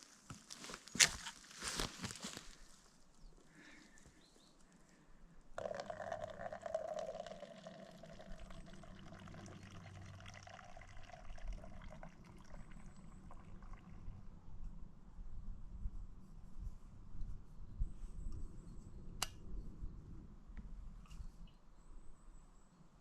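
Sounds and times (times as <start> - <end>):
water running: 5.6 - 12.8.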